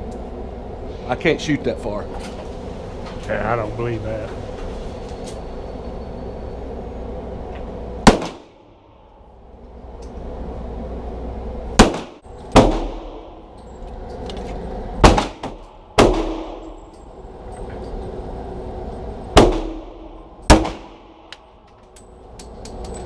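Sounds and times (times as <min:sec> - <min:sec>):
low background rumble: 0:00.0 - 0:23.0
handgun shots echoing: 0:08.1 - 0:08.5, 0:11.8 - 0:13.4, 0:15.0 - 0:16.8, 0:19.4 - 0:21.4.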